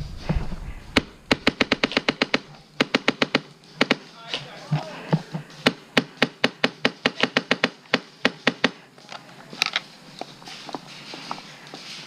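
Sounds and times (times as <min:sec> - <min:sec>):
airsoft gun shots: 0:00.9 - 0:04.4, 0:05.6 - 0:08.8.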